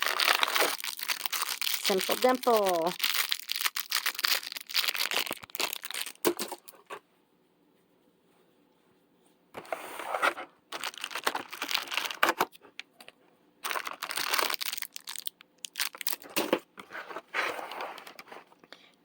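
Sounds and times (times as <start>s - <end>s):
packaging crinkling and rustling: 0.0s - 7.0s, 10.0s - 12.6s, 13.6s - 18.7s.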